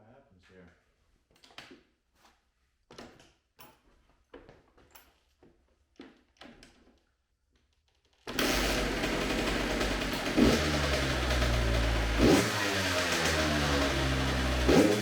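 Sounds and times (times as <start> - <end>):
dirt bike engine starting and revving: 8.3 - 15.0.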